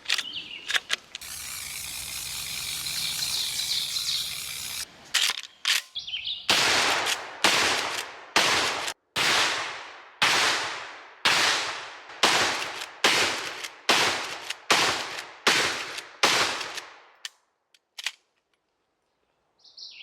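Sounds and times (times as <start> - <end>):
gunshots: 6.5 - 17.0.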